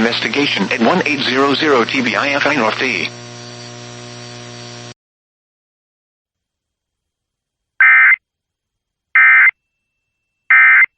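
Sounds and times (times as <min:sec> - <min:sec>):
faint radio broadcast hum: 0:00.0 - 0:04.8.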